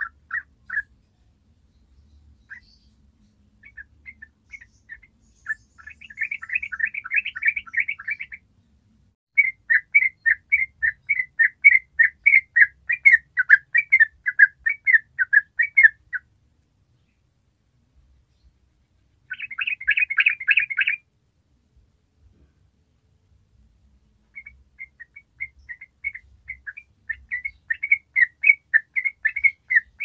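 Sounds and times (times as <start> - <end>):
bulbul singing: 0.0 - 8.5, 9.4 - 16.3, 19.2 - 21.0, 24.3 - 30.0.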